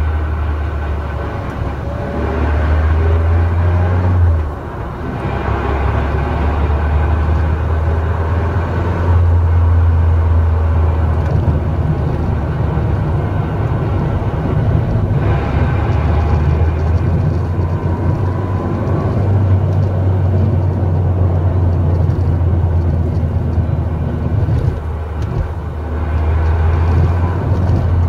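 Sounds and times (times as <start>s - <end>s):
car engine drone: 0.0s - 28.0s
road noise: 0.0s - 28.0s
faint whine: 9.3s - 28.0s.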